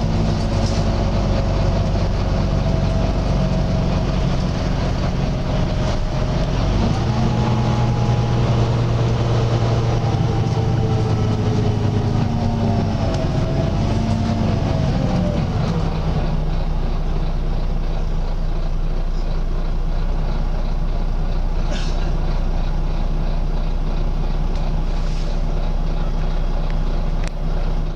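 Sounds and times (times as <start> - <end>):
engine whine rising and falling: 0.0 - 17.4
bus diesel engine running: 0.0 - 27.9.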